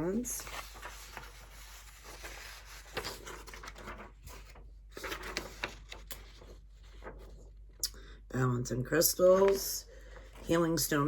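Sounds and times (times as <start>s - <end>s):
paper rustling and crinkling: 0.0s - 7.7s.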